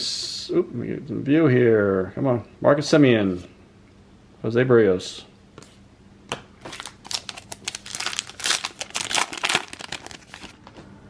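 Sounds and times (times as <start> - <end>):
plastic wrapper crinkling: 6.6 - 10.7.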